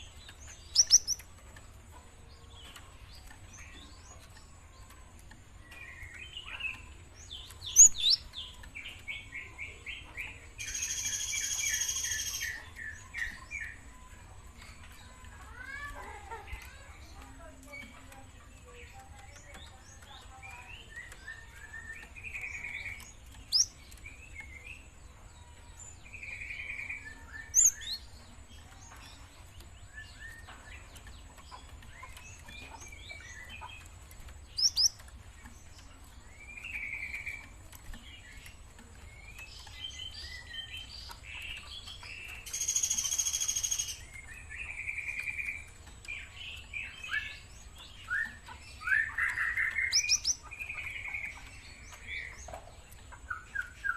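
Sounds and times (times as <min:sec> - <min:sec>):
bird chirping and twittering: 0:00.0 - 0:53.9.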